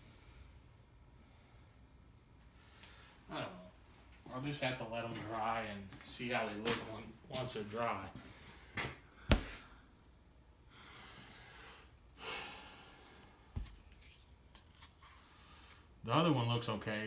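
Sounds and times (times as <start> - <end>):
breathy exhale: 10.7 - 13.4.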